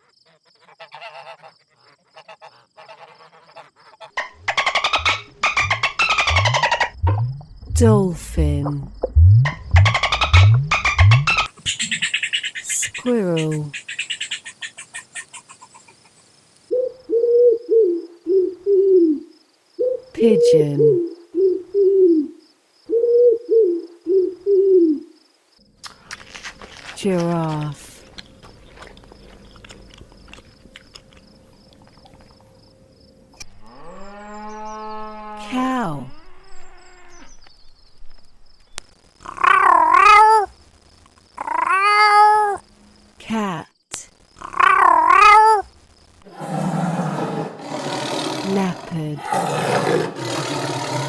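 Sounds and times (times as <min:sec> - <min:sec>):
squirrel chattering: 0:04.4 - 0:07.2, 0:09.0 - 0:15.6, 0:47.6 - 0:51.0
pigeon cooing: 0:04.6 - 0:07.3, 0:16.7 - 0:19.2, 0:19.8 - 0:22.3, 0:22.9 - 0:25.1, 0:46.3 - 0:51.0.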